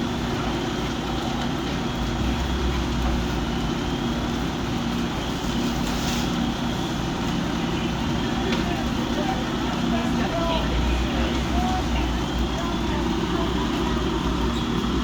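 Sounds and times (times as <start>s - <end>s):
fire truck engine droning: 0.0s - 15.0s.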